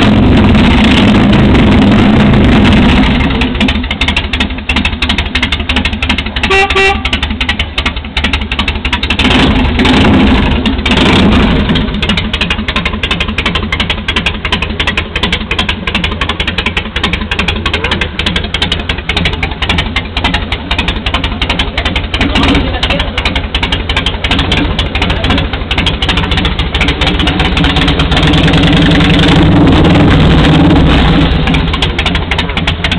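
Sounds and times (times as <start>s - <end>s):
motorcycle engine running: 0.0s - 32.9s
short horn beep: 6.4s - 7.2s.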